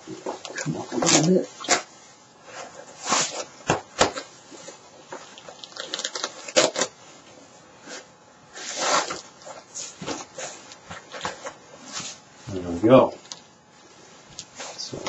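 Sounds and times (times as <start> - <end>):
foam and velcro rustling: 5.3 - 7.0.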